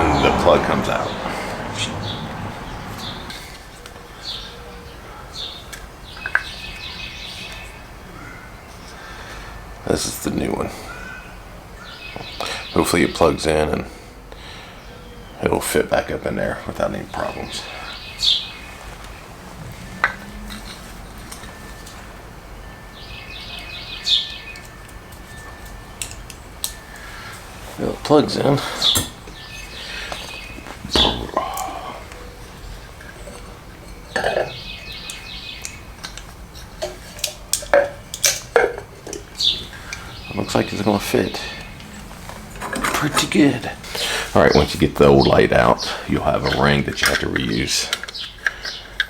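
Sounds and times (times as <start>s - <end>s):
bird chirps: 0.0s - 10.0s, 16.9s - 36.8s, 39.3s - 46.7s.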